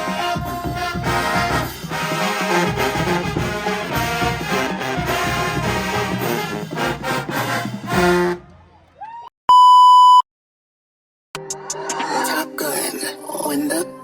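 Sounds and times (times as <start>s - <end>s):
brass band music: 0.0s - 8.6s
electronic beep: 9.5s - 10.2s.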